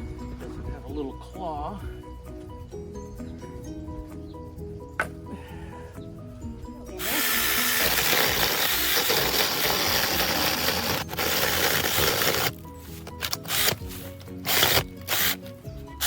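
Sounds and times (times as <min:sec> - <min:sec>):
background music: 0:00.0 - 0:16.0
mini chainsaw cutting wood: 0:07.0 - 0:15.5.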